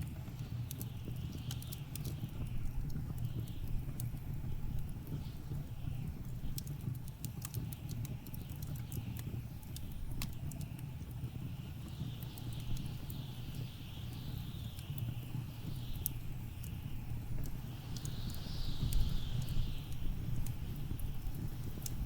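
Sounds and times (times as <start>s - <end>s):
wood fire crackling: 0.0s - 22.0s
blizzard wind whistling: 13.2s - 22.0s.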